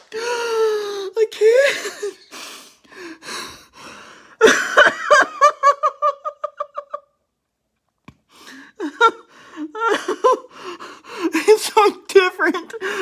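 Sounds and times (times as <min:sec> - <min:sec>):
person laughing hard: 0:01.4 - 0:02.3, 0:04.4 - 0:07.1.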